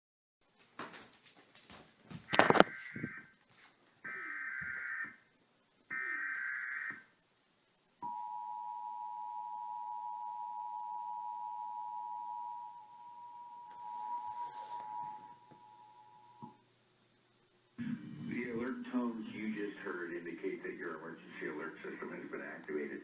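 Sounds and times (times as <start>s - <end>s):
two-tone attention signal: 8.0s - 16.5s.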